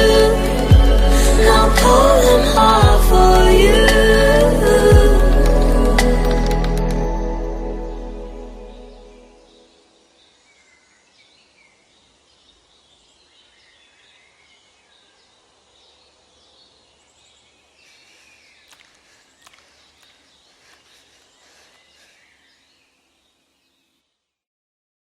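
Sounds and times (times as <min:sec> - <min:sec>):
soft hiss: 0:00.0 - 0:07.2, 0:09.6 - 0:24.4
birds chirping: 0:07.8 - 0:24.0
sharp clicks: 0:18.7 - 0:20.9.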